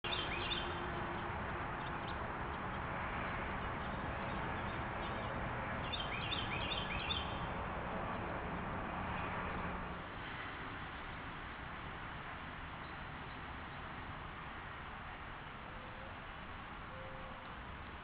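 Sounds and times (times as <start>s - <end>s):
small birds chirping: 0.0s - 9.7s.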